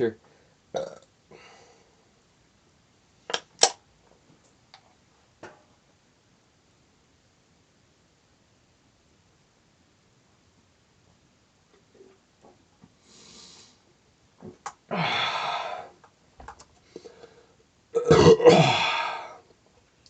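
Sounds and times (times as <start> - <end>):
man belching: 0.8 - 1.1, 18.0 - 19.3.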